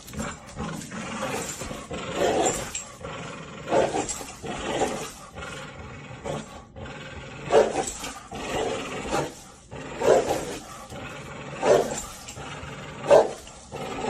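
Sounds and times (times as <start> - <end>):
dog play-growling: 0.0 - 14.0.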